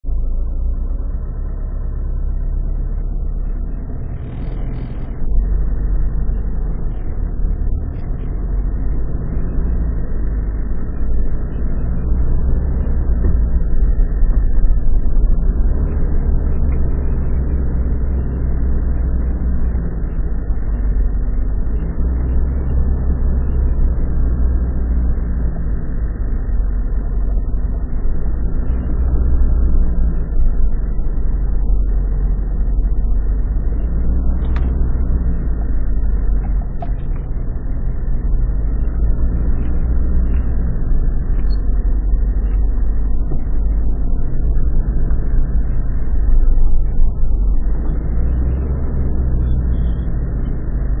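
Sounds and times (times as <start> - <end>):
vehicle engine running: 0.0 - 51.0.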